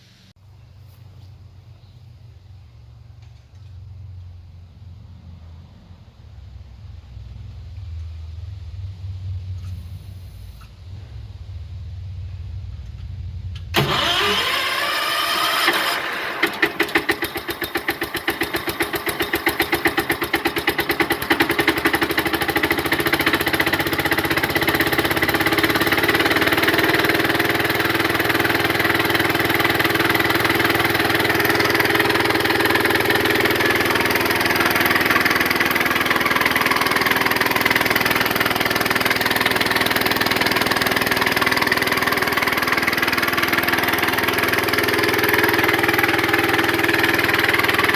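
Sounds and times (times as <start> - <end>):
motor spinning up and running: 13.8 - 17.2, 21.6 - 47.9.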